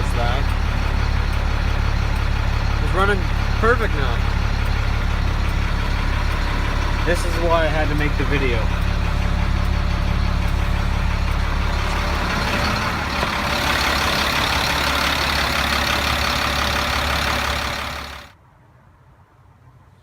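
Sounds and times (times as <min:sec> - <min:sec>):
diesel truck engine idling: 0:00.0 - 0:18.4.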